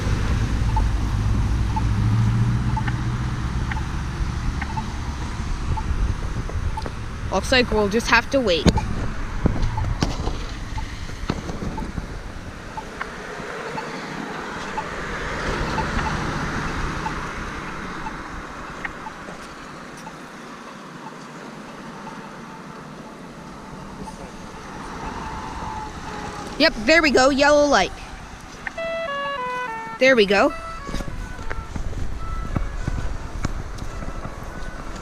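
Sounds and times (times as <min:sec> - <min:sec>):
ticking locator tone: 0:00.0 - 0:09.0, 0:09.6 - 0:10.0, 0:11.7 - 0:35.0
passing traffic: 0:00.0 - 0:35.0.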